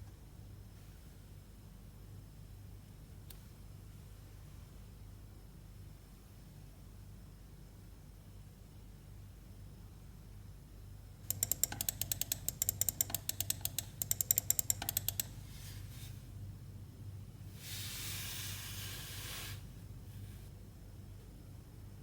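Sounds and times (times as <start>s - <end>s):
rapid mouse clicking: 11.3s - 15.4s.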